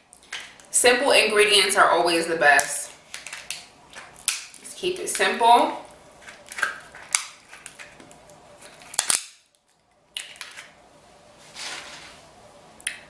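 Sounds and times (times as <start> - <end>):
crab shells cracking: 0.1 - 0.7, 2.6 - 5.3, 5.9 - 10.8.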